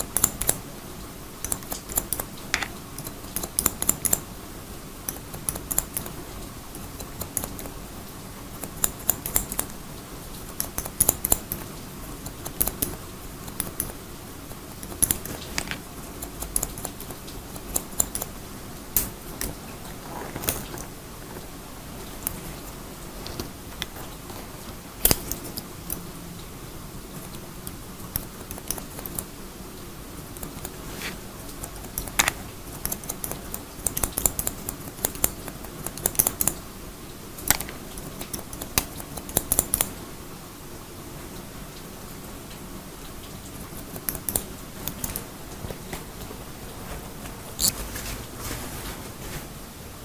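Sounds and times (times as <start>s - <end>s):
scissors snipping: 0.0s - 0.6s, 1.4s - 4.3s, 5.1s - 6.2s, 6.8s - 7.8s, 8.6s - 9.8s, 10.4s - 26.1s, 27.2s - 29.3s, 30.2s - 36.6s, 37.4s - 39.9s, 43.6s - 46.4s, 47.0s - 48.0s.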